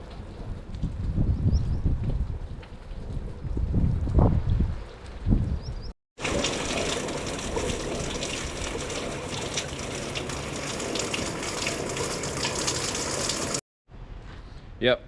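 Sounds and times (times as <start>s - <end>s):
steady rain falling: 6.2s - 13.6s.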